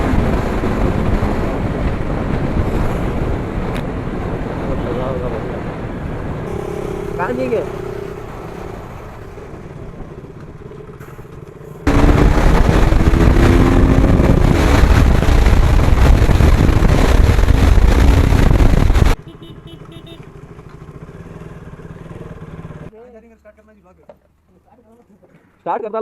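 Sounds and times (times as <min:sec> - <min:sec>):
wind noise on microphone: 0:00.0 - 0:06.8, 0:11.8 - 0:19.2
motorcycle engine running: 0:05.9 - 0:22.9.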